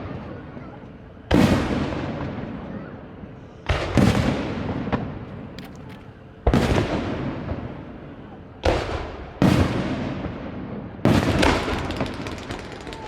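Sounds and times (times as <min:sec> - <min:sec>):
faint firework crackles: 0:00.0 - 0:13.0
firework shells booming: 0:06.5 - 0:07.8, 0:08.6 - 0:13.0.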